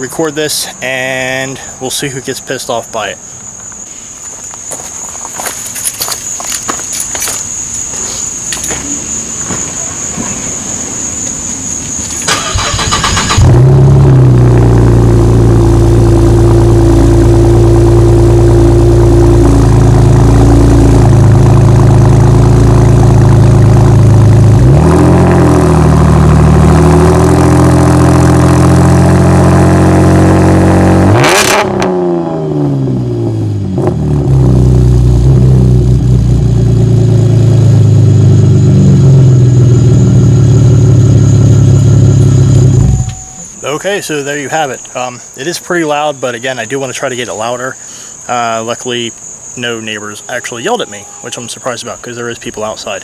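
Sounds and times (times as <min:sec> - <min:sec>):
car engine idling and revving: 0:10.7 - 0:43.6
car engine starting: 0:11.6 - 0:43.7.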